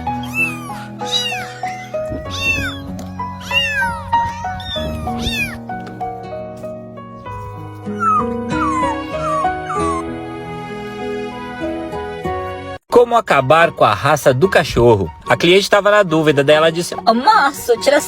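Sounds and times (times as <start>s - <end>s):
cat meowing: 0.0s - 5.7s, 7.9s - 10.0s
background music: 0.0s - 18.0s.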